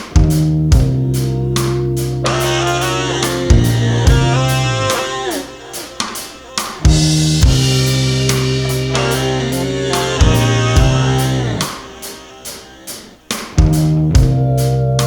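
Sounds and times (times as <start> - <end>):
rock band music: 0.0 - 15.0
bending guitar line: 0.8 - 12.1.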